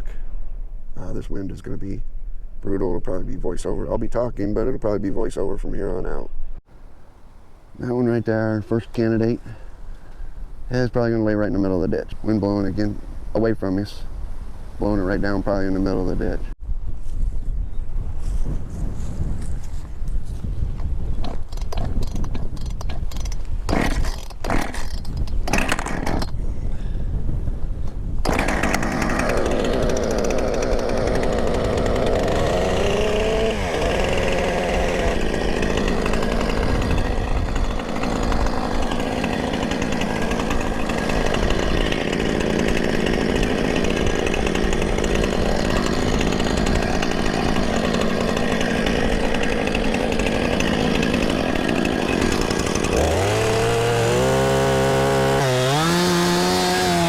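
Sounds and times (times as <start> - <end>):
wind on microphone: 16.1 - 24.2, 24.9 - 28.3, 36.4 - 38.8
chainsaw cutting a tree: 21.4 - 26.3, 28.2 - 57.0.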